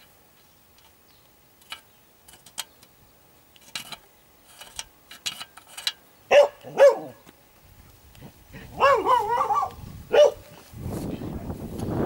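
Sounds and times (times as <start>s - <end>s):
dog barking: 6.3s - 7.2s, 8.8s - 10.5s.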